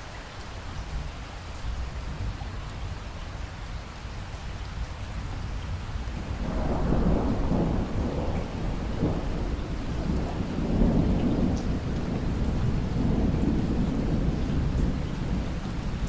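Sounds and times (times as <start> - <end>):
steady rain: 0.0 - 16.0
thunder rumbling: 5.2 - 16.0.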